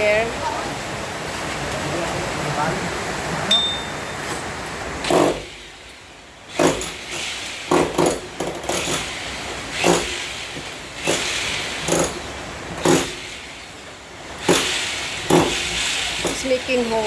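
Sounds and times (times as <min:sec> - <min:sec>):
hammer strikes ringing: 0:03.5 - 0:04.2.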